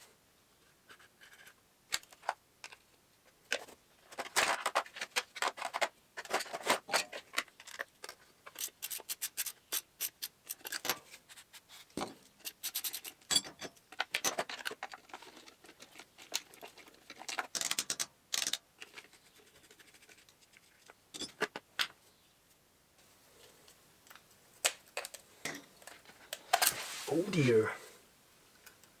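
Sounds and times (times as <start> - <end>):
clicks scrapes and rubbing: 3.5 - 13.3.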